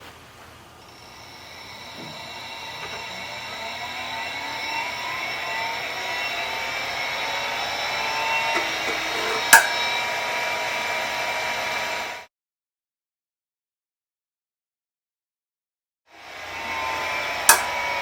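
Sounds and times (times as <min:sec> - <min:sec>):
hard disk drive whine: 0:00.0 - 0:12.3, 0:16.1 - 0:18.0
hard disk sharp click: 0:17.5 - 0:17.8.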